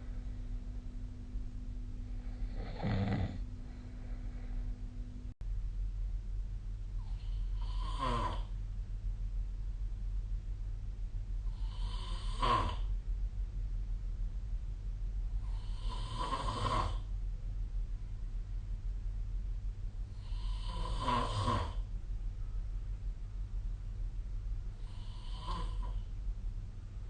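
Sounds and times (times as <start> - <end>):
steady low hum: 0.0 - 27.0
person snoring: 2.1 - 4.7, 7.0 - 8.6, 11.5 - 12.9, 15.4 - 17.1, 20.2 - 21.8, 24.8 - 26.0.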